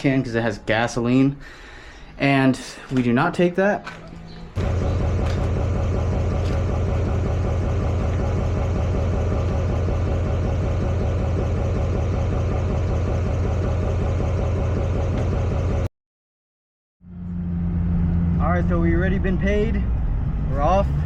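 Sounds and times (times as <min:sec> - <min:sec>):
vehicle engine idling: 0:04.5 - 0:15.9.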